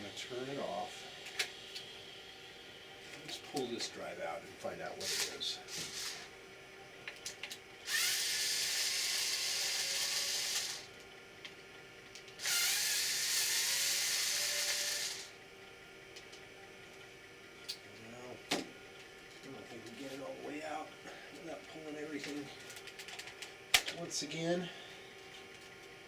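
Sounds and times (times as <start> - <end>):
cordless screwdriver running: 5.0 - 6.3, 7.9 - 10.9, 12.4 - 15.4.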